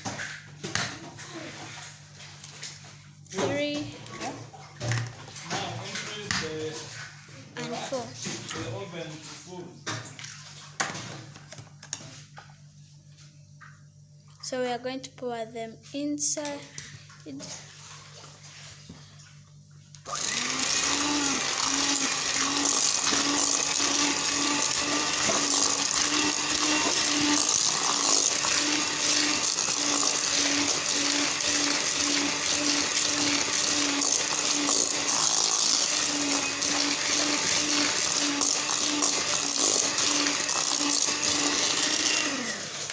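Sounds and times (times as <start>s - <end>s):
electric mixer whirring: 20.0s - 42.9s.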